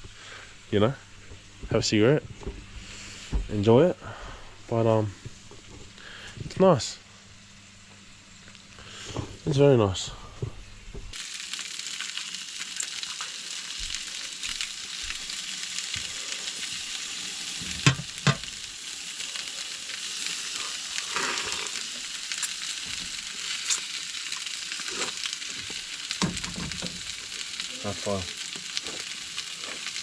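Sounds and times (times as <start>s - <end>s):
food sizzling: 11.1s - 30.0s.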